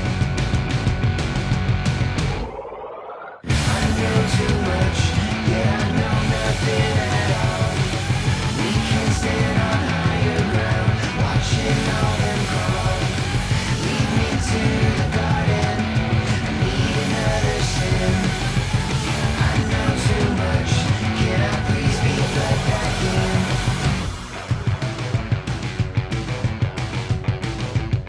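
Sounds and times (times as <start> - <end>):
rock song with electric guitar: 0.0 - 2.5, 3.5 - 28.0
person singing: 3.5 - 25.1.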